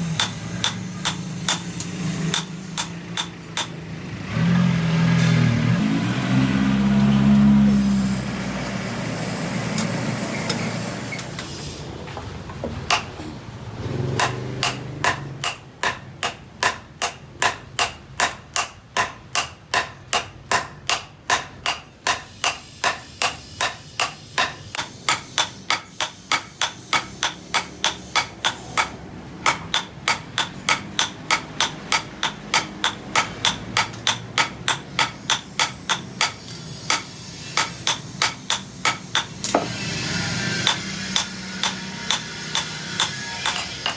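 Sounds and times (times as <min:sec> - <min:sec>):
hammer striking metal on anvil: 0:00.0 - 0:03.8, 0:12.9 - 0:43.9.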